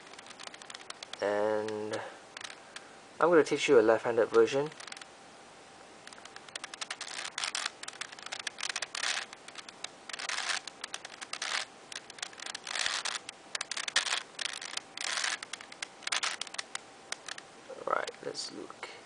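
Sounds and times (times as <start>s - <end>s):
puzzle cube turning clicks: 0.0s - 2.9s, 4.3s - 5.1s, 6.0s - 17.5s.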